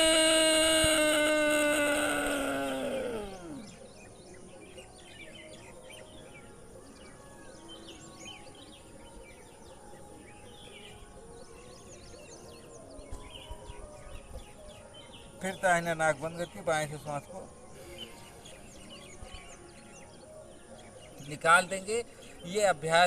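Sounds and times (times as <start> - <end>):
faint birds chirping: 0.0 - 23.0
person breathing drawn-out throat tone: 0.9 - 3.8.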